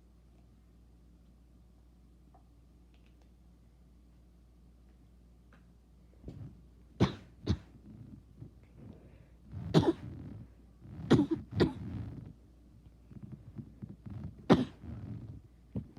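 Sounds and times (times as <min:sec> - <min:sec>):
person coughing: 0:09.6 - 0:10.4, 0:11.0 - 0:12.2, 0:14.5 - 0:15.3.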